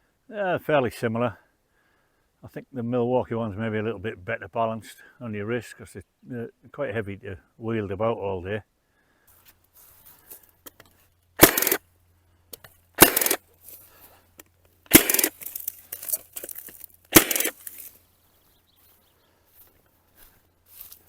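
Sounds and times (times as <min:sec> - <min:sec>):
fencing stapler sharp cracks: 0:11.4 - 0:11.8, 0:13.0 - 0:13.4, 0:14.9 - 0:15.5, 0:17.1 - 0:17.6.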